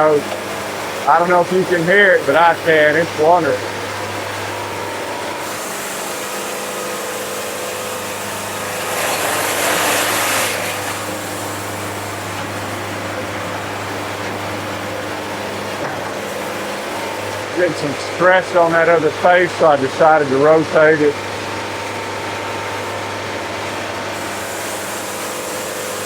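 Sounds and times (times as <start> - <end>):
sawmill engine hum: 0.0 - 26.0
saw cutting hiss: 1.1 - 3.7, 5.4 - 12.2.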